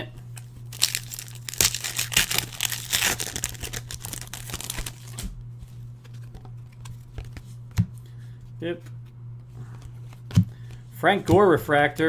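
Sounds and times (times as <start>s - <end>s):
steady low hum: 0.0s - 12.0s
foil wrapper crinkling and tearing: 0.7s - 5.3s.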